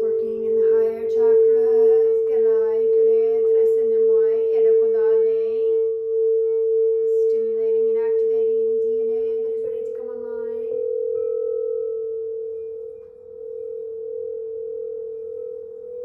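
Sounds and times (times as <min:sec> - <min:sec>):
woman singing wordless notes: 0:00.0 - 0:11.3
crystal singing bowl ringing: 0:00.0 - 0:16.0.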